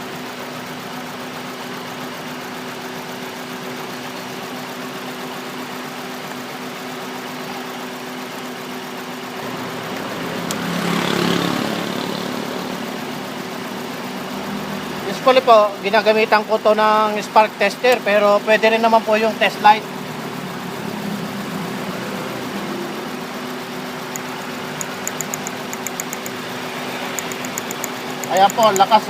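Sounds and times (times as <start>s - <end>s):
car engine idling with misfire: 0.0s - 29.0s
click: 10.0s - 10.6s, 24.1s - 26.4s, 27.2s - 28.9s.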